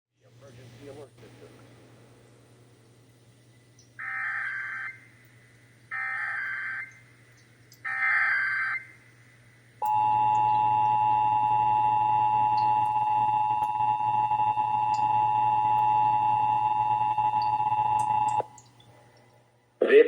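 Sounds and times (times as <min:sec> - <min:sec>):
two-tone attention signal: 0:09.9 - 0:18.4.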